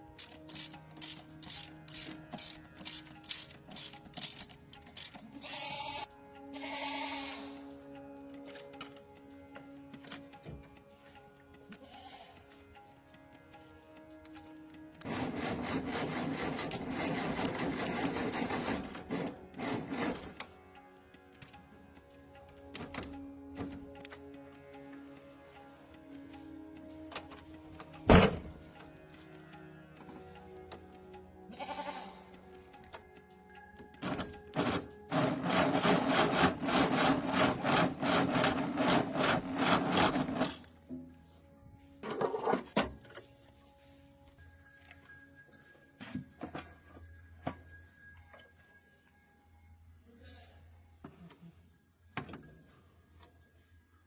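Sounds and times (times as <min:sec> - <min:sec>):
tool scraping a surface: 0:15.0 - 0:20.4, 0:34.6 - 0:40.7.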